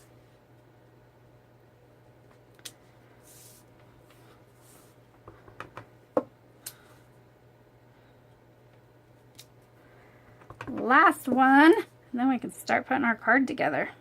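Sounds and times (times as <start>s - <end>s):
paper swishing: 3.2s - 3.7s.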